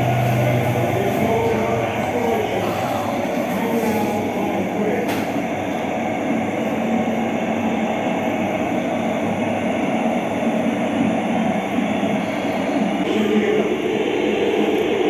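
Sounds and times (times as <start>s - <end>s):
vehicle rumbling in motion: 0.0s - 6.1s.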